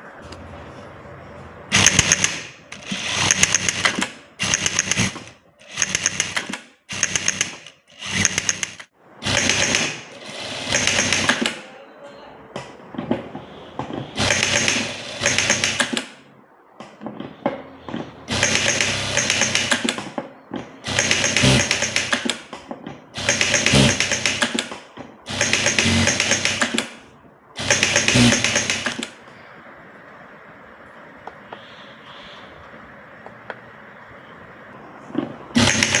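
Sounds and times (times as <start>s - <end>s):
sewing machine needle clatter: 1.7s - 11.6s, 35.6s - 36.0s.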